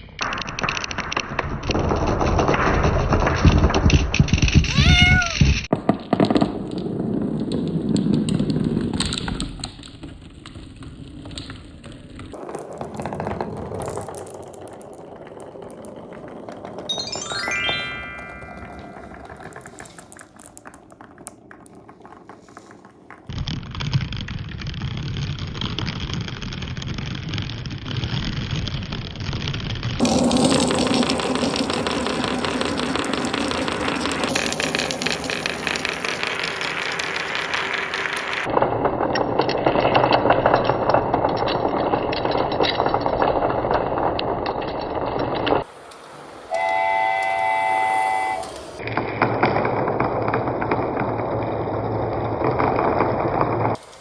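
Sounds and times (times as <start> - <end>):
marbles rolling and clattering: 0.0 - 46.6, 48.2 - 54.0
short horn-like toot: 46.5 - 48.6.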